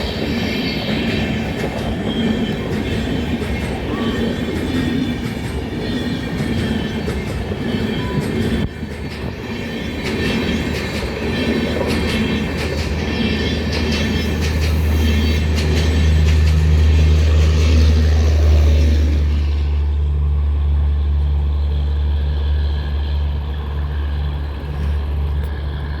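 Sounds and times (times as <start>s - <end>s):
train wheels clicking over rail joints: 0.0s - 19.9s.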